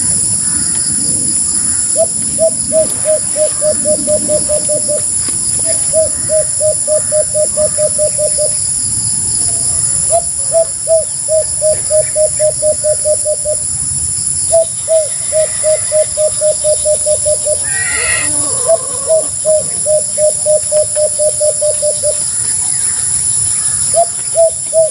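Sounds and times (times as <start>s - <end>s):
dove cooing rapidly: 0.4s - 8.6s, 9.4s - 13.6s, 14.5s - 24.9s
gliding bird call: 14.5s - 22.3s.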